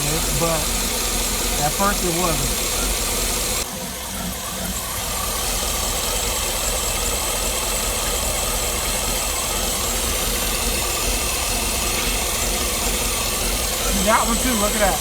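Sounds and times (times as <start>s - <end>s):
car engine idling: 0.0s - 15.0s
engine lifter tick: 0.0s - 15.0s.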